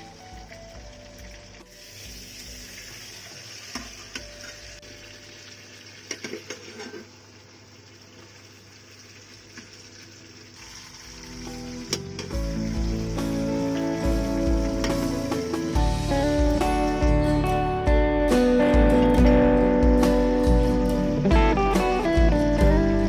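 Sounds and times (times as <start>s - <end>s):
fish sizzling in hot oil: 0.0s - 16.9s.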